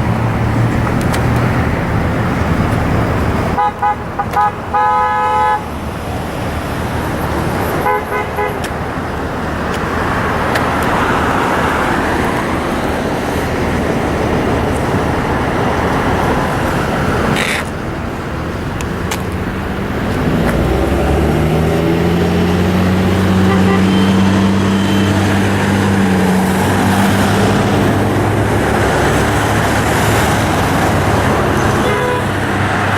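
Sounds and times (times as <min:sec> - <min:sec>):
freeway traffic rushing: 0:00.0 - 0:32.9
car horns honking: 0:00.9 - 0:06.0, 0:07.6 - 0:10.3, 0:22.3 - 0:32.9.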